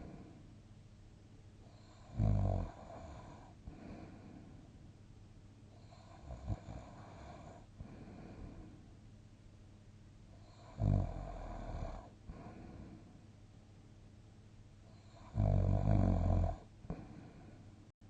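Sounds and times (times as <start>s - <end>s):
soft breathing: 0.0s - 0.6s, 3.0s - 4.8s, 6.9s - 9.0s, 12.0s - 13.3s, 16.8s - 17.9s
person snoring: 1.7s - 4.3s, 5.8s - 8.7s, 10.4s - 13.1s, 15.0s - 17.5s.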